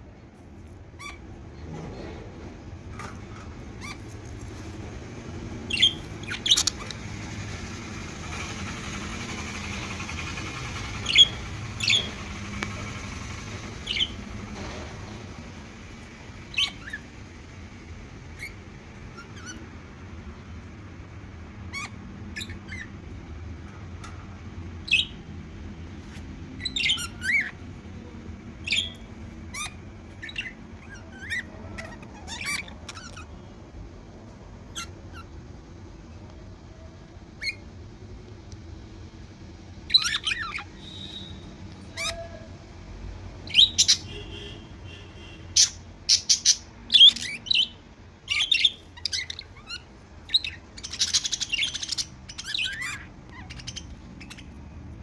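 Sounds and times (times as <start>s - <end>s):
budgerigars chirping and squawking: 1.0s - 1.2s, 3.8s - 4.6s, 5.6s - 7.6s, 8.3s - 14.4s, 16.0s - 17.1s, 18.3s - 19.7s, 21.6s - 23.1s, 24.8s - 25.3s, 26.0s - 27.7s, 28.6s - 33.5s, 34.7s - 35.4s, 37.4s - 37.6s, 39.8s - 42.4s, 43.4s - 55.0s.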